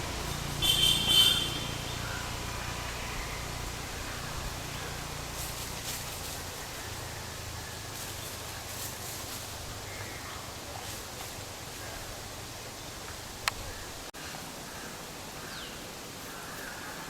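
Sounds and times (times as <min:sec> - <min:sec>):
birds calling: 0:00.0 - 0:10.6
steady hiss: 0:00.0 - 0:17.0.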